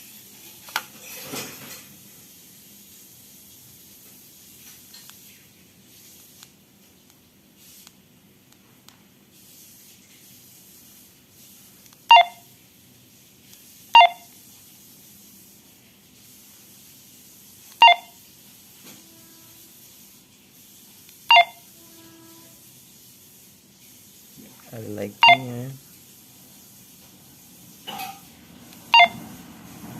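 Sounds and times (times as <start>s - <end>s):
radio key beeps: 12.1s - 12.4s, 14.0s - 14.3s, 17.8s - 18.1s, 21.3s - 21.6s, 25.2s - 25.5s, 29.0s - 29.2s.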